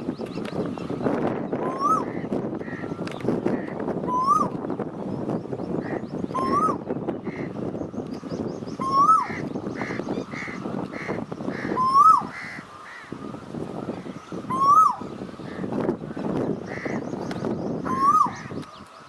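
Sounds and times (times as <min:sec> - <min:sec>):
small birds chirping: 0:00.0 - 0:19.0
koel calling: 0:08.8 - 0:13.1, 0:17.8 - 0:18.5.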